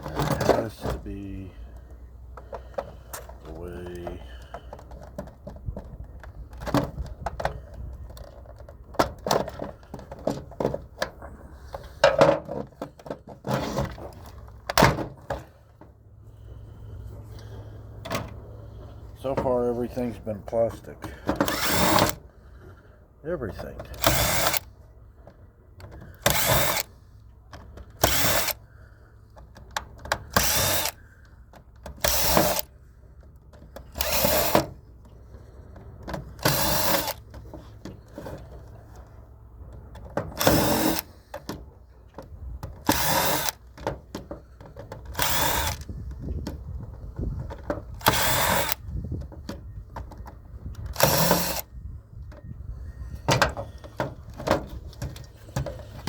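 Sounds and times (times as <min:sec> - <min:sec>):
power screwdriver bursts: 0:21.2 - 0:22.2, 0:23.9 - 0:24.7, 0:26.1 - 0:27.0, 0:28.0 - 0:28.6, 0:30.2 - 0:31.1, 0:31.9 - 0:32.7, 0:33.8 - 0:34.8, 0:36.4 - 0:37.3, 0:40.3 - 0:41.3, 0:42.8 - 0:43.7, 0:45.1 - 0:46.0, 0:48.0 - 0:48.9, 0:50.9 - 0:51.7.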